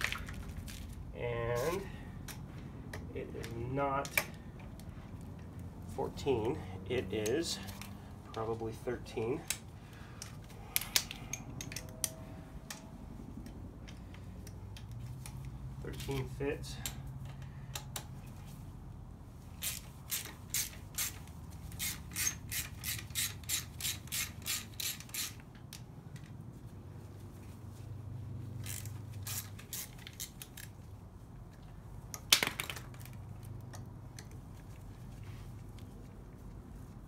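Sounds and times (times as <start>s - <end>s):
socket ratchet clicking: 9.4s - 12.8s, 19.6s - 25.9s, 28.6s - 30.8s.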